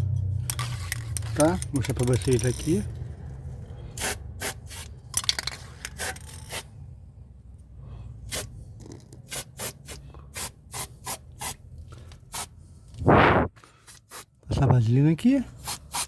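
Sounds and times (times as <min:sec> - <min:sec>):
steady low rumble: 0:12.7 - 0:13.6
scraping rubbing strokes: 0:13.0 - 0:13.5.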